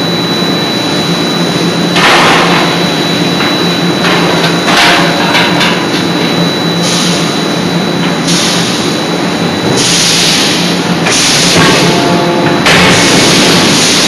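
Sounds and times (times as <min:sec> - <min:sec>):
machine hum: 0:00.0 - 0:14.0
loud hydraulic hissing: 0:09.8 - 0:12.1, 0:13.0 - 0:14.0.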